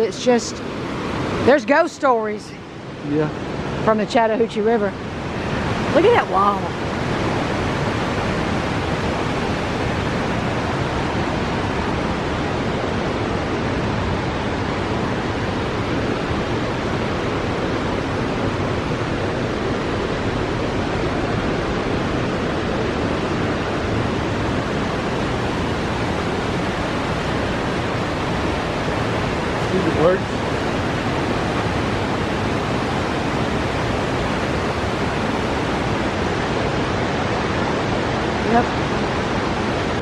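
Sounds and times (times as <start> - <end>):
river water rushing over rapids: 0.0 - 40.0.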